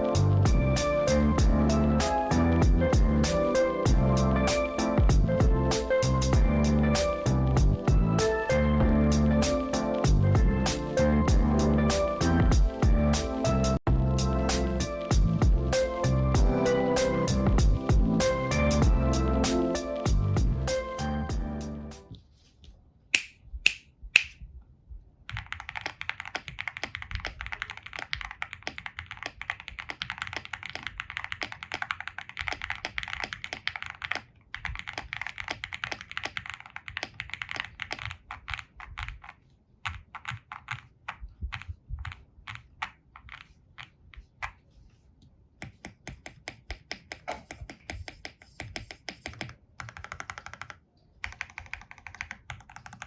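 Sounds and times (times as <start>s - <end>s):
typing on mechanical keyboard: 25.3s - 44.6s, 45.6s - 53.0s.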